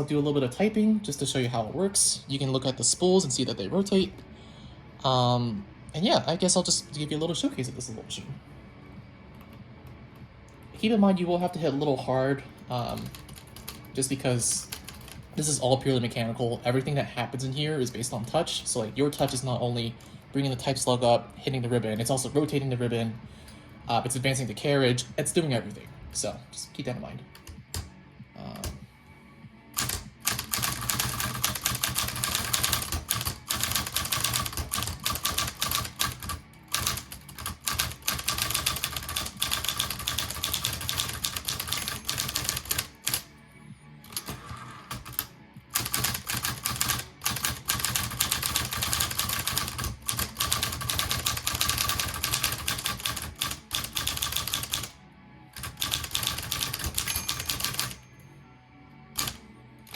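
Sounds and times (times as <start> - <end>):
manual typewriter typing: 29.8 - 43.2, 44.1 - 54.9, 55.6 - 58.0, 59.2 - 59.9.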